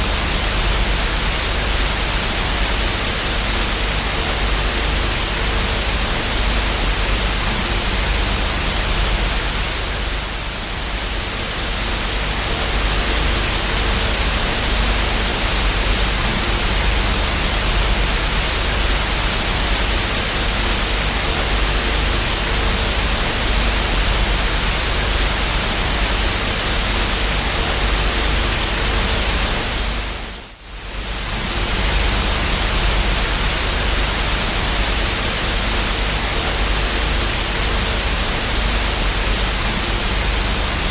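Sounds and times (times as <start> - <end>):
tv static hiss: 0.0 - 40.9.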